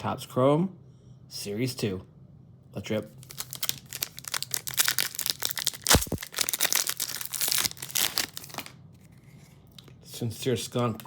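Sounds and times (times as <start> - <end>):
foil ripping: 3.2 - 8.7
foil packs crinkling: 3.2 - 8.8.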